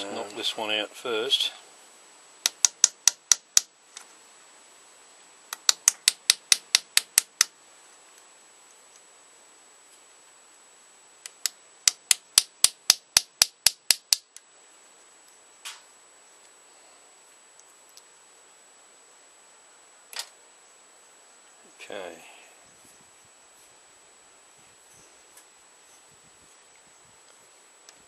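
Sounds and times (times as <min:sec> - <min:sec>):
hammer tapping on rivet: 0:02.5 - 0:03.7.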